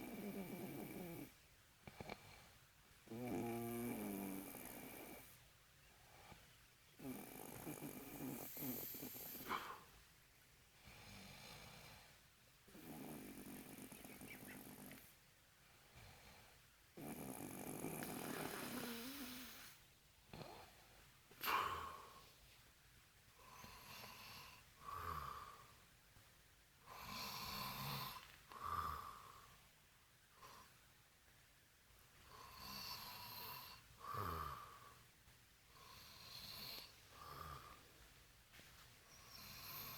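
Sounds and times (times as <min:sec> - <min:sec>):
man snoring: 0:00.0 - 0:01.3, 0:03.1 - 0:05.2, 0:07.0 - 0:09.8, 0:12.7 - 0:15.0, 0:17.0 - 0:19.7, 0:32.4 - 0:34.8.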